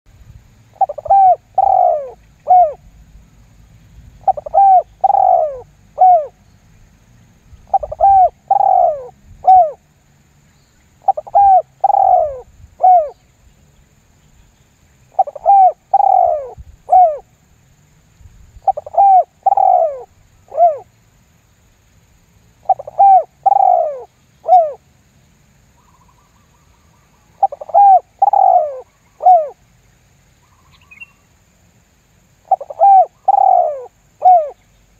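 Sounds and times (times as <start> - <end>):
dove cooing: 0.7 - 2.9, 4.2 - 6.4, 7.7 - 9.8, 11.0 - 13.2, 15.1 - 17.3, 18.6 - 20.9, 22.6 - 24.8, 27.4 - 29.6, 32.4 - 34.6.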